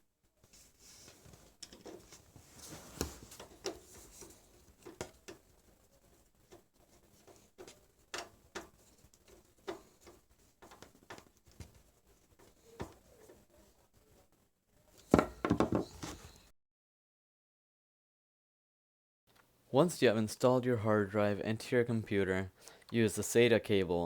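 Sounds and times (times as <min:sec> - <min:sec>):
clicks and knocks of computer parts: 0:01.6 - 0:02.2, 0:07.2 - 0:11.8.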